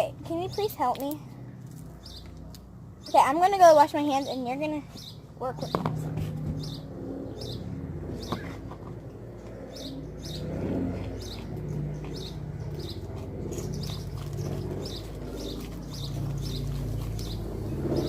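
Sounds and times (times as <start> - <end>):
low steady hum: 0.0 - 18.0
small bird chirping: 9.7 - 18.0.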